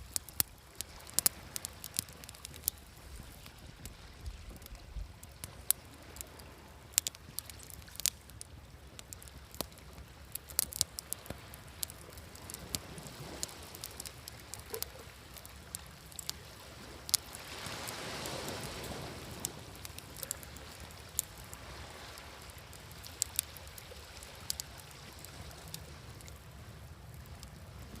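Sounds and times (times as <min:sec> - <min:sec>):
campfire crackling and popping: 0:00.0 - 0:28.0
wave washing in: 0:16.6 - 0:23.1.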